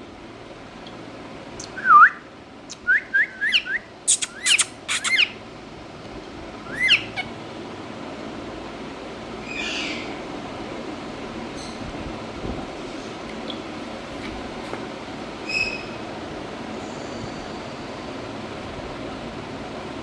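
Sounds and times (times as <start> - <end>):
parakeet calling: 2.7 - 5.5, 6.6 - 7.6, 9.4 - 10.3, 15.4 - 16.1.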